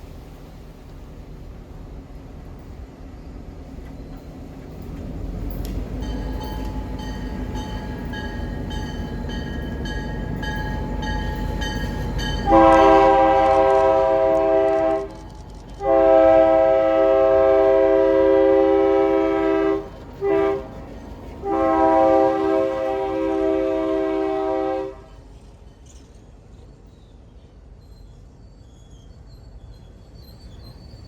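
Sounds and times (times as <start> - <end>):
locomotive air horn: 12.4 - 15.2, 15.8 - 25.2.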